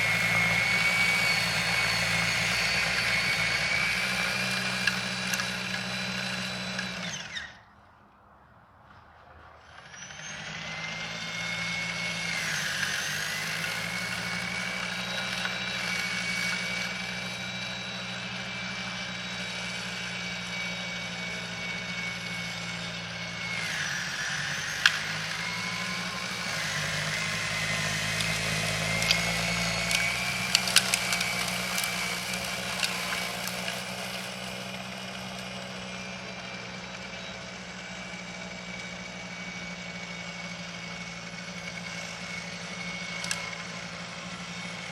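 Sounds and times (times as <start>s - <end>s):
snow blower motor whine: 0.0s - 8.0s, 9.0s - 44.9s.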